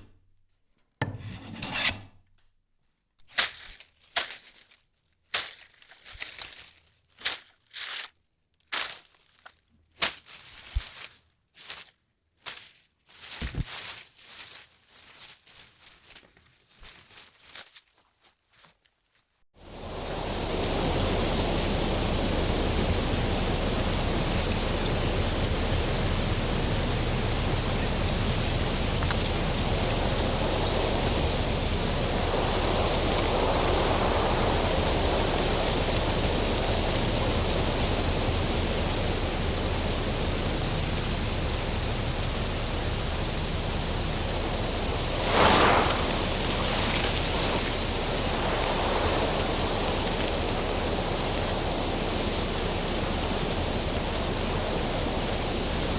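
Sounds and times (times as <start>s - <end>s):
leaves and branches rustling: 3.2s - 55.9s.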